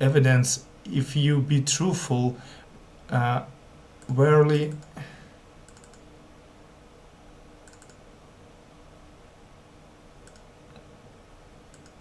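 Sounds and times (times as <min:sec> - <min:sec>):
low steady hum: 0:00.0 - 0:12.0
faint small clicks: 0:05.7 - 0:06.1, 0:07.6 - 0:08.0, 0:10.2 - 0:10.9, 0:11.7 - 0:12.0.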